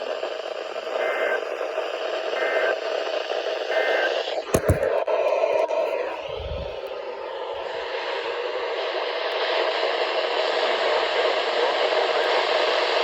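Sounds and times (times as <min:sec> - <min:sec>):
faint two-tone data bursts: 0:02.2 - 0:02.9.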